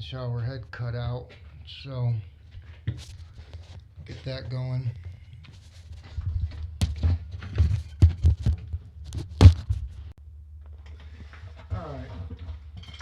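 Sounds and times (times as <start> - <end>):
hard objects knocking and thumping: 6.4 - 9.8.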